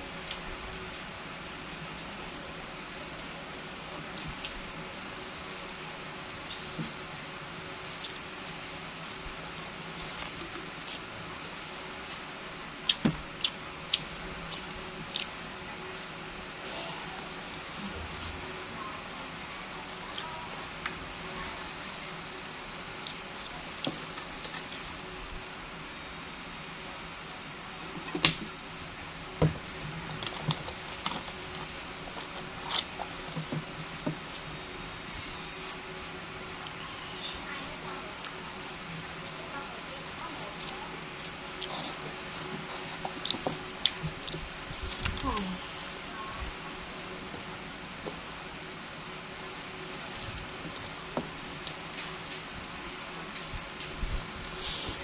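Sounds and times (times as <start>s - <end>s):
eating clicks and smacks: 9.0s - 16.0s, 40.6s - 46.0s.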